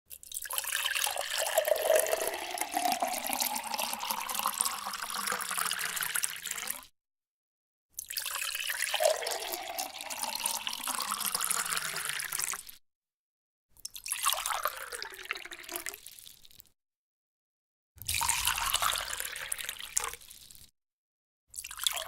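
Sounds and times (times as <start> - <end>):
water pouring into a container: 0.1 - 6.9, 8.0 - 12.8, 14.0 - 16.4, 18.0 - 20.7, 21.6 - 22.0.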